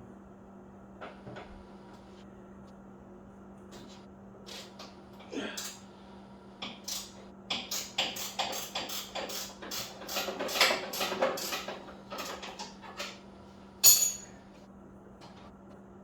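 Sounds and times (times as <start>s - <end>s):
ringing metal clink: 13.8s - 14.4s.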